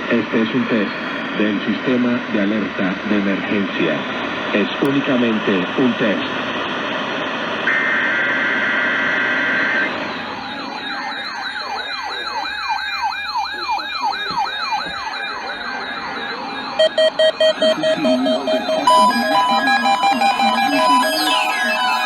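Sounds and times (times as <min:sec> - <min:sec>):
electronic alert siren: 0:10.4 - 0:22.0
rapid pulsed beeps: 0:15.8 - 0:22.0.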